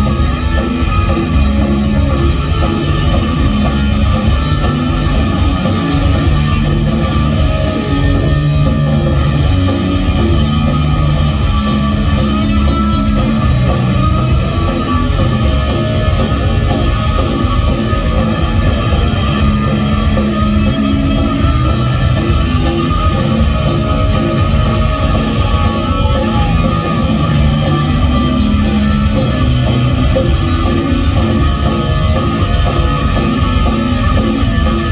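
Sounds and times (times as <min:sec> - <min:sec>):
live punk rock band playing: 0:00.0 - 0:34.9.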